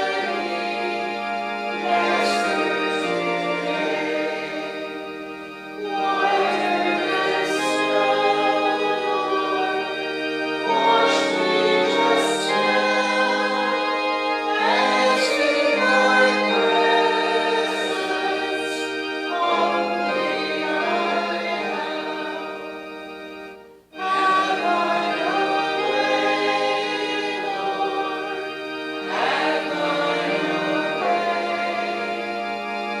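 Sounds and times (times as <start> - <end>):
congregation singing a hymn: 0.0 - 33.0
organ chords: 0.0 - 33.0.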